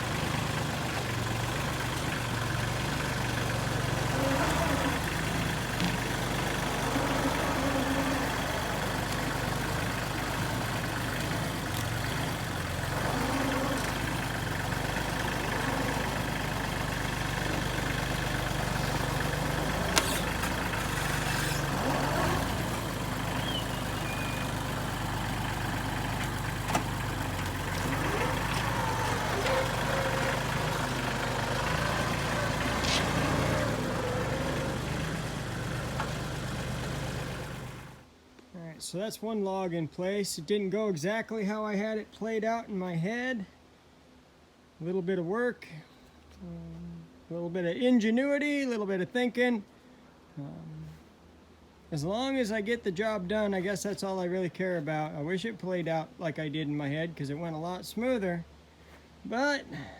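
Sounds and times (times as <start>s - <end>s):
tractor engine running: 0.0s - 38.1s.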